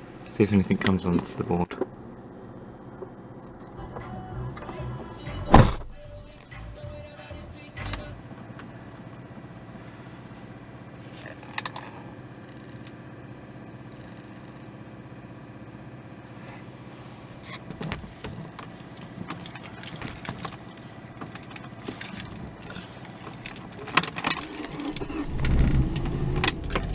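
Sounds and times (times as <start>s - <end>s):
ignition clicks: 7.8s - 9.2s, 17.4s - 26.9s
car keys jangling: 17.4s - 26.9s.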